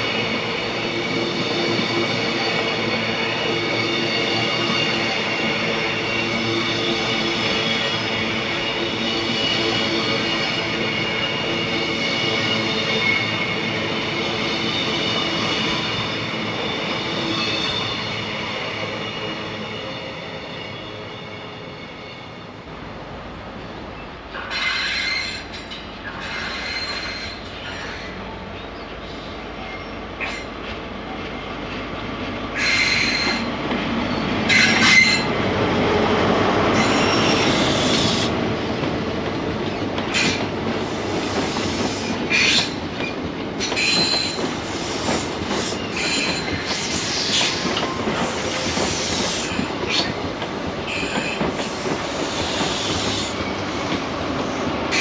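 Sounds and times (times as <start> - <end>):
rush of wheels on rail: 0.0 - 55.0
train hum: 0.0 - 55.0
wheel squeal: 43.6 - 50.2.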